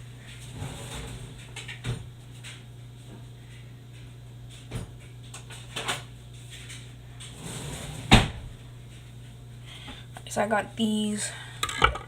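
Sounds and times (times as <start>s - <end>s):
electrical hum: 0.0s - 12.0s
objects knocking and clicking: 11.6s - 12.0s.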